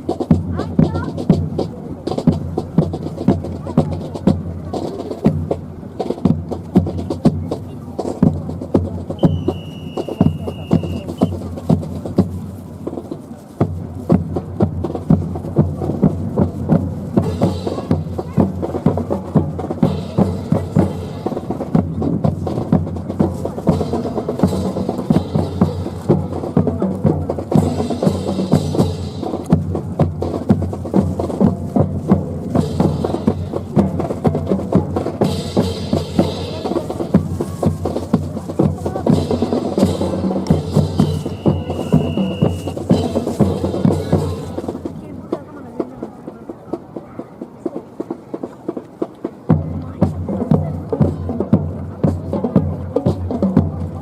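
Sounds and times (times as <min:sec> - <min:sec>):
music: 0:00.0 - 0:54.0
short high tone: 0:41.2 - 0:42.8.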